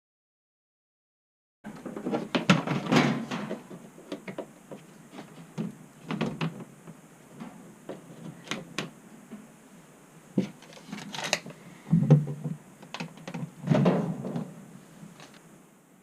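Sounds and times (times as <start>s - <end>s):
hard objects clicking and knocking: 10.4s - 14.5s.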